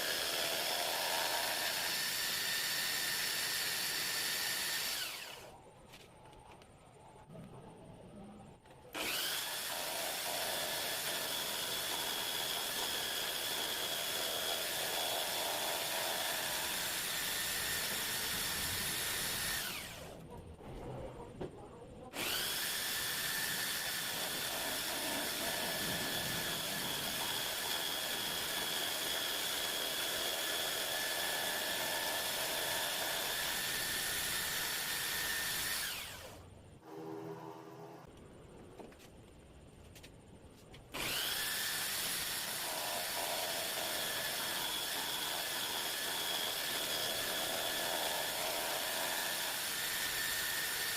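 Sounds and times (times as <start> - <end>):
power tool whining: 0.0 - 5.5, 8.9 - 20.2, 22.1 - 38.1, 40.9 - 50.9.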